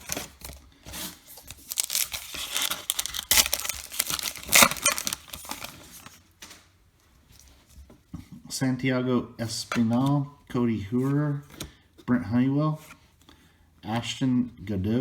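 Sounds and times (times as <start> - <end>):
wrapper crinkling: 0.0 - 6.6
wrapper ripping: 0.0 - 6.6.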